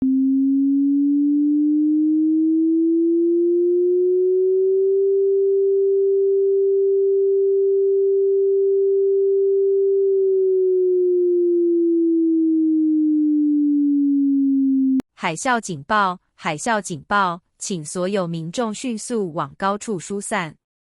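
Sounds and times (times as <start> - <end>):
synthesized warning siren: 0.0 - 15.0.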